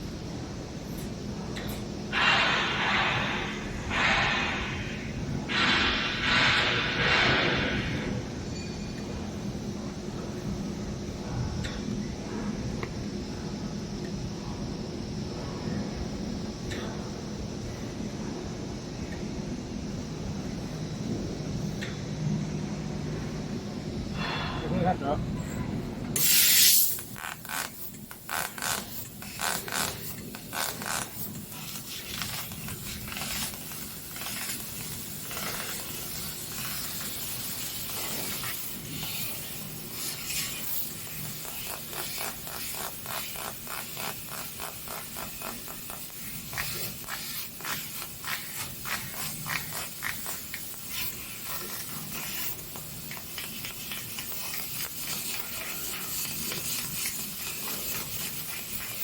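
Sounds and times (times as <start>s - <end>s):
laser cutter hissing and crackling: 0.0s - 8.6s, 26.2s - 59.0s.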